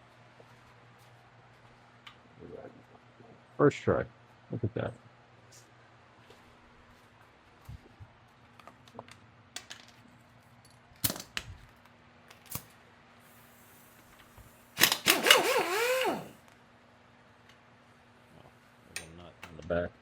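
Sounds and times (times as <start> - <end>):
metallic clicks of tools: 14.8 - 16.3.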